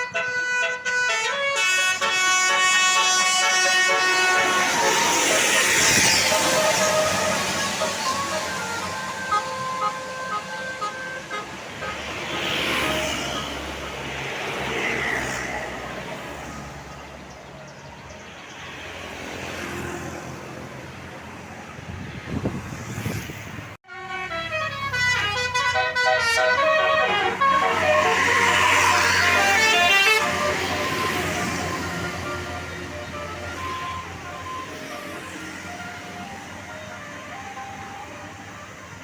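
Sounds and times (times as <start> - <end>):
bus musical horn tune: 0.0 - 13.6, 23.8 - 38.0
road traffic noise: 0.0 - 39.0
vehicle passing: 4.0 - 23.8, 24.5 - 36.4.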